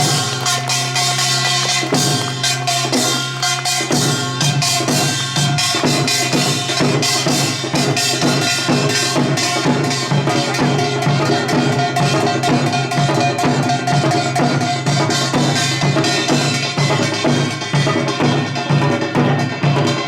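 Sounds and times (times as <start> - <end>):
small gong struck rapidly: 0.0 - 15.8
hourglass drum struck rapidly: 0.0 - 20.0.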